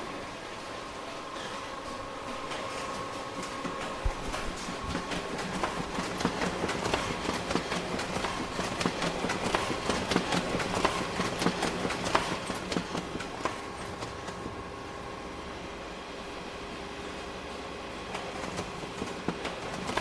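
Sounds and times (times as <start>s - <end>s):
photocopier motor hum: 0.4s - 15.4s.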